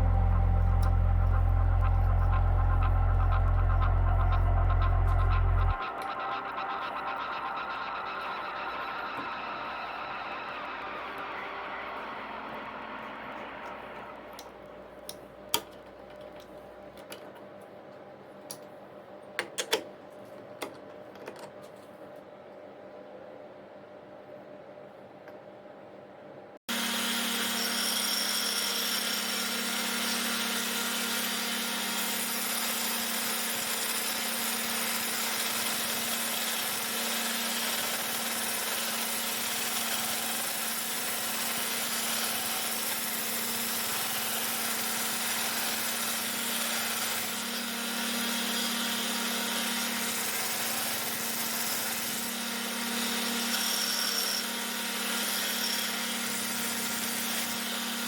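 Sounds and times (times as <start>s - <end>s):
power tool running under load: 26.7s - 58.0s.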